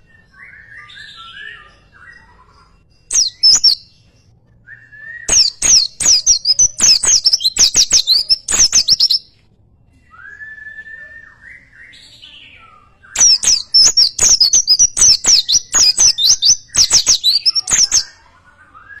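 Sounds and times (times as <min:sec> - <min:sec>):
bird singing rapid sharp notes: 0:03.0 - 0:04.1, 0:05.2 - 0:09.3, 0:11.5 - 0:18.3.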